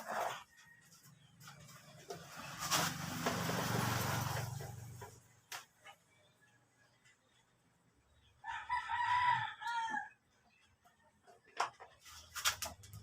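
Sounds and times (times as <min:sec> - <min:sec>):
rooster crowing: 0:08.4 - 0:10.2.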